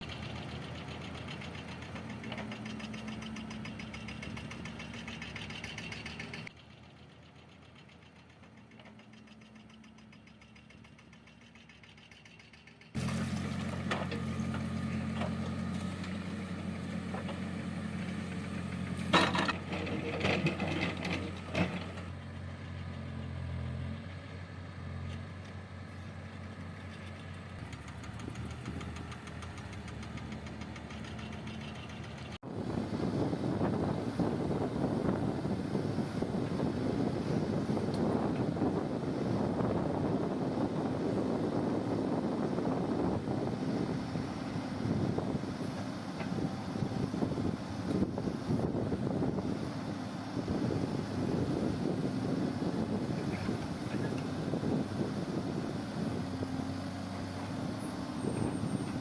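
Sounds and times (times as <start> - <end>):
diesel machinery engine running: 0.0 - 59.0.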